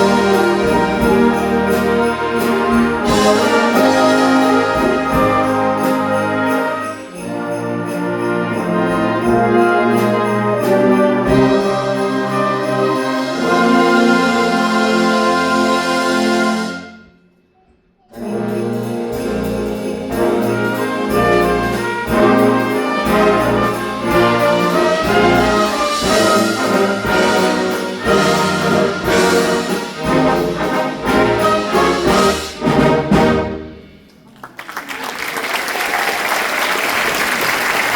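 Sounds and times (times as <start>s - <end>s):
concert band playing: 0.0s - 16.8s, 18.2s - 34.0s
applause: 34.2s - 37.9s.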